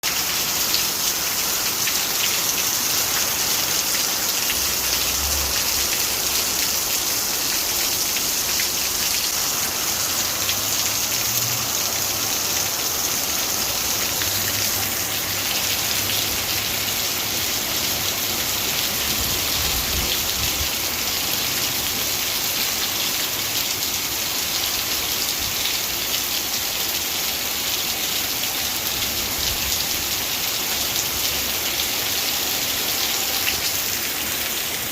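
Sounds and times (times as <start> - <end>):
heavy rain hissing: 0.0 - 22.4.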